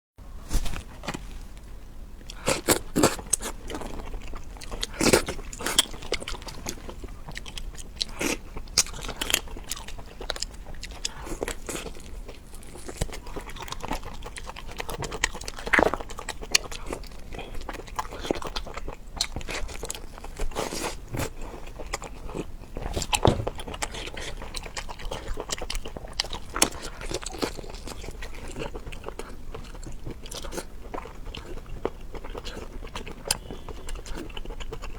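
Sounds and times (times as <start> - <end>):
person chewing crunchy food: 2.2 - 34.9.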